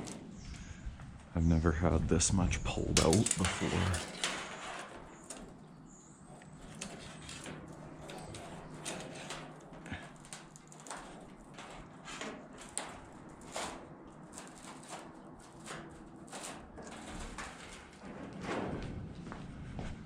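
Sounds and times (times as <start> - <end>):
sheet steel knocks and clicks: 6.3 - 18.7.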